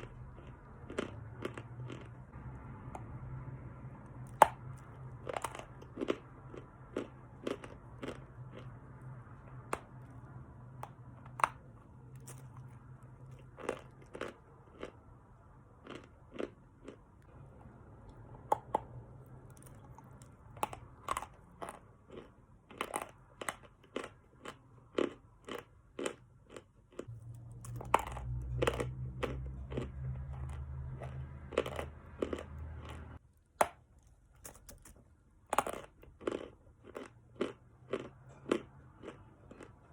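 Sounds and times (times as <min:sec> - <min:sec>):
chalk crunching being chewed: 0:00.0 - 0:02.2, 0:04.2 - 0:08.7, 0:10.8 - 0:15.0, 0:19.4 - 0:33.1, 0:35.6 - 0:39.8
low steady hum: 0:00.0 - 0:39.9.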